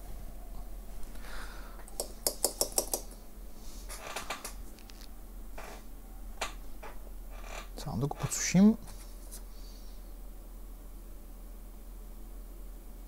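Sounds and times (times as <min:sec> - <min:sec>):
small tools clicking: 0:01.9 - 0:03.1.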